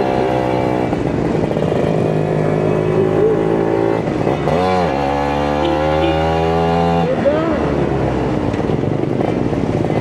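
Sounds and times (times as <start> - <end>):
motorcycle engine running: 0.0 - 7.6.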